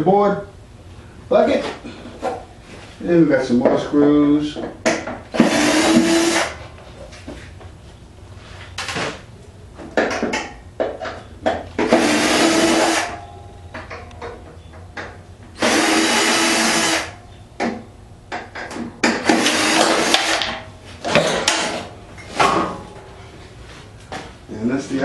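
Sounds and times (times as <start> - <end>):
power drill running: 5.3 - 6.6, 11.9 - 13.2, 15.6 - 17.2, 19.2 - 20.6.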